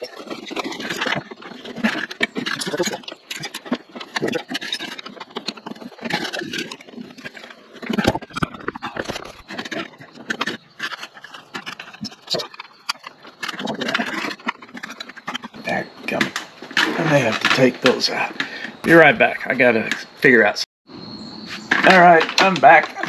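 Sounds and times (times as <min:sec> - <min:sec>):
tools scraping and knocking: 0:00.0 - 0:18.0.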